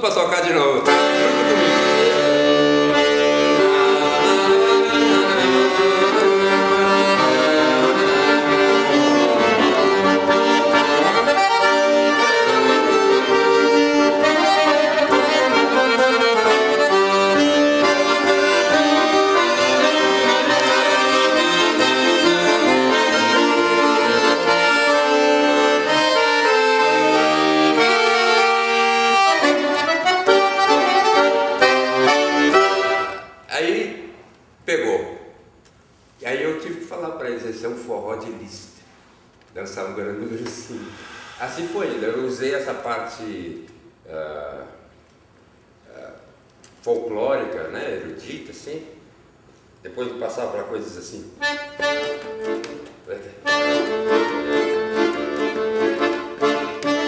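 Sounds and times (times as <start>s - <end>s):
accordion playing a tune: 0.2s - 33.5s, 40.5s - 42.7s, 51.3s - 57.0s.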